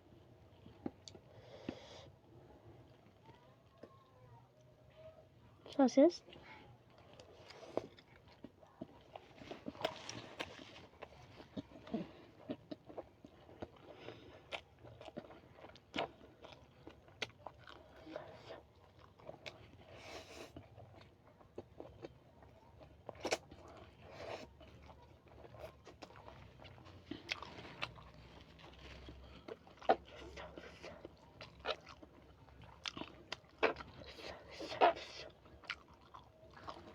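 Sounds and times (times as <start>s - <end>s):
biting and chewing sausage: 6.3s - 36.9s.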